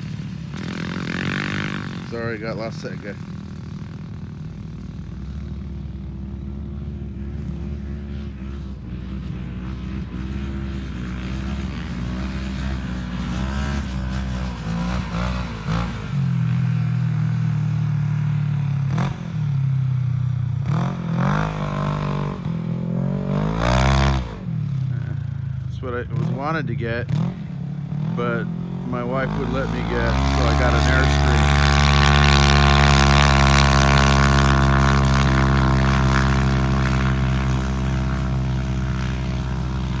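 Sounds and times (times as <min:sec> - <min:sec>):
engines revving as they pass: 0:00.0 - 0:20.0, 0:20.6 - 0:40.0
off-road vehicle engine running: 0:00.0 - 0:40.0.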